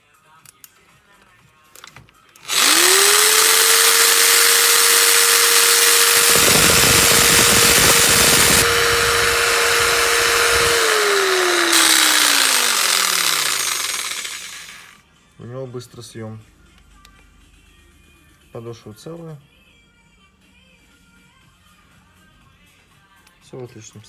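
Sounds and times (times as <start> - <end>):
jigsaw motor whining: 2.4 - 15.0.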